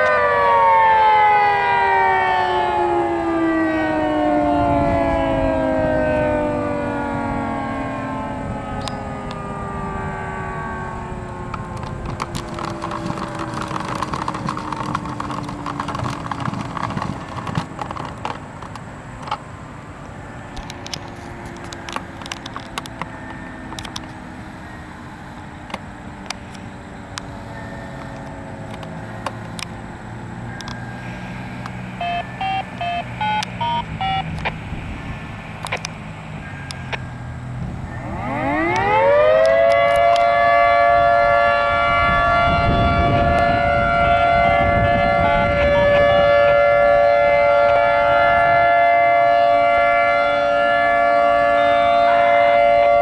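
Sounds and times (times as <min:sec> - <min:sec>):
warning siren winding down: 0:00.0 - 0:18.8, 0:20.2 - 0:53.0
sharp clicks: 0:11.5 - 0:19.4, 0:31.6 - 0:34.6, 0:35.6 - 0:36.0
touch-tone beeps from radio: 0:32.0 - 0:34.6.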